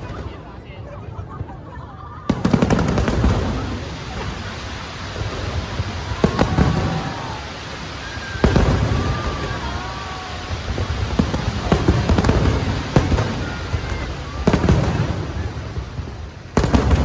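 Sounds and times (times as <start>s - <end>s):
low rumble and crackling: 0.0s - 17.0s
voices calling out: 0.0s - 17.0s
firework bangs: 1.2s - 17.0s.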